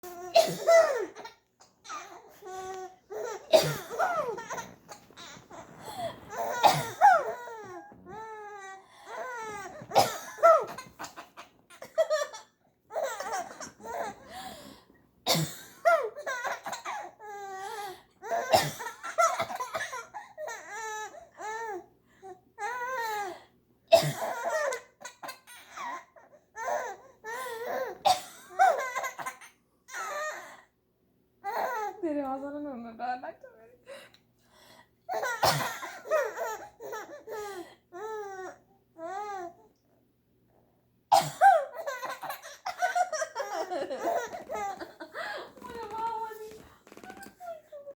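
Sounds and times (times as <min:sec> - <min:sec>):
adult fake cough: 0:00.4 - 0:01.1, 0:03.5 - 0:04.6, 0:06.4 - 0:07.2, 0:09.9 - 0:11.2, 0:15.3 - 0:16.0, 0:18.4 - 0:20.0, 0:23.9 - 0:24.5, 0:35.2 - 0:36.2, 0:41.1 - 0:42.9
baby laughing: 0:41.7 - 0:46.0.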